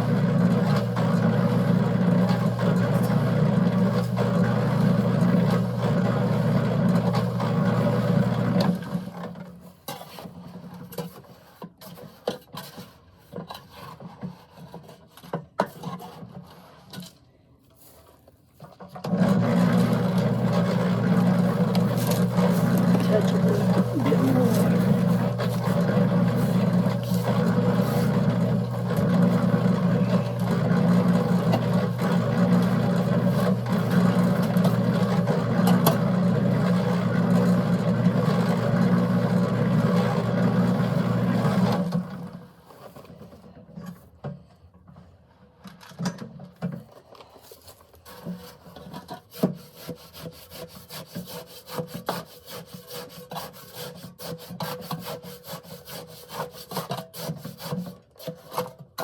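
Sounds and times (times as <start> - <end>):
concrete mixer humming: 0.0 - 9.4, 18.9 - 42.6
wet concrete churning in drum: 0.0 - 16.8, 18.6 - 43.4, 46.9 - 59.0
gritty scraping: 19.3 - 35.2.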